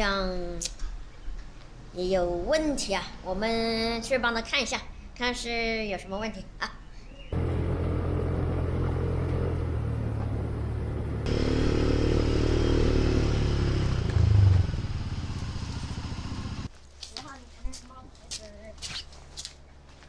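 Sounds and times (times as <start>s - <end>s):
motorcycle engine running: 7.3s - 16.7s.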